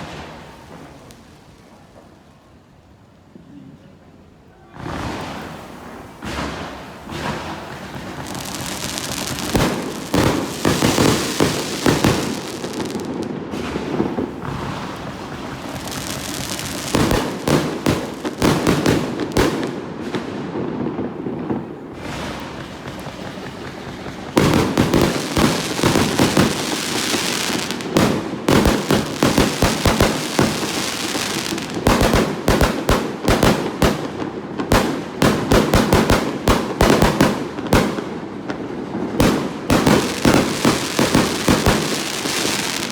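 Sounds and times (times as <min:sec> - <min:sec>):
fireworks bangs and crackles: 0:00.0 - 0:03.0, 0:04.5 - 0:42.9.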